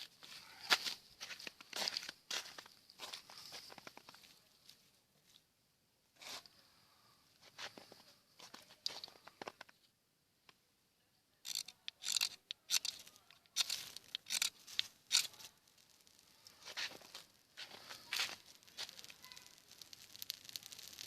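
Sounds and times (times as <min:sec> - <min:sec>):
knife scraping ferrocerium rod: 0:11.5 - 0:15.4.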